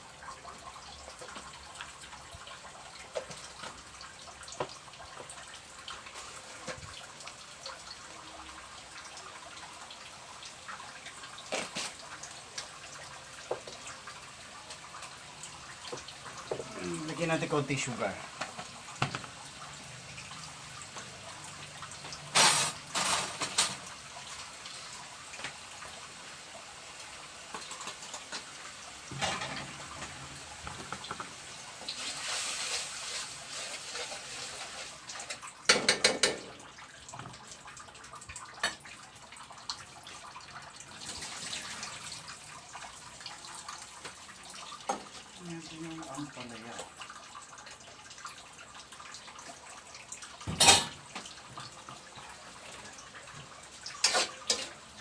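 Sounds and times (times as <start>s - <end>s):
food sizzling in a pan: 0.0s - 55.0s
cookware clattering: 50.5s - 51.0s, 54.0s - 54.8s.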